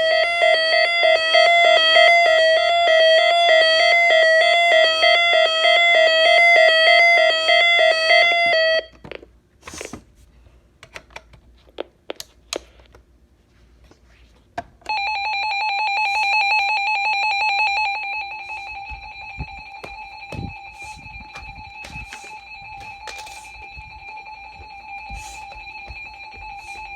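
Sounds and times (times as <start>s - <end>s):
chime-like siren tone: 0.0s - 8.9s, 14.9s - 26.9s
rapidly pulsed beep tone: 16.1s - 26.9s.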